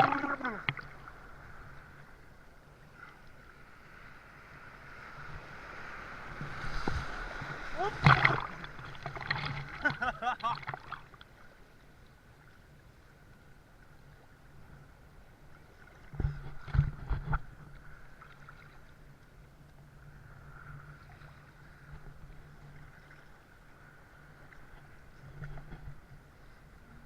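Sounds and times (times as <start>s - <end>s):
water sloshing: 0.0s - 1.4s, 5.6s - 11.4s.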